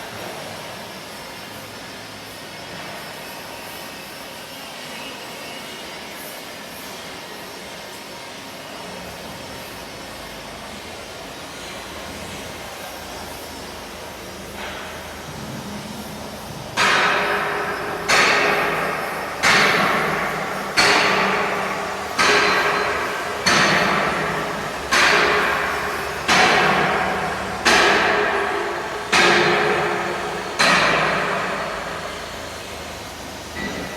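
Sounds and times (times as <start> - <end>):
steady machine hum: 8.5 - 33.9
drilling rig heavy strikes: 14.5 - 33.9.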